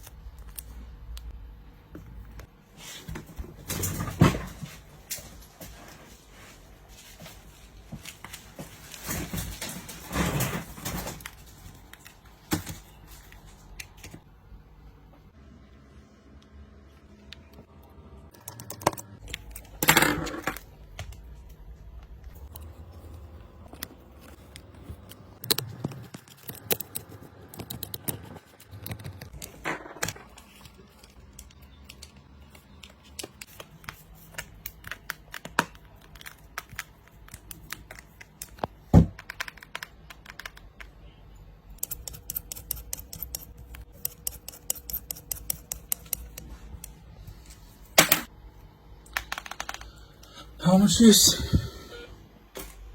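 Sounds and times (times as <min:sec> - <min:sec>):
small tools clicking and scraping: 0:41.8 - 0:46.9.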